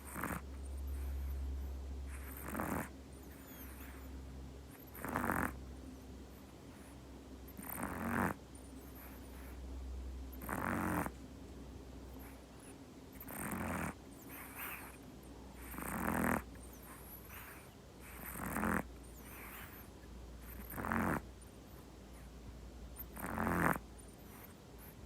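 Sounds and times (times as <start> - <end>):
cat snoring: 0.0 - 1.4, 2.1 - 4.1, 4.7 - 5.6, 7.5 - 9.6, 10.3 - 11.2, 12.1 - 21.3, 23.0 - 25.0.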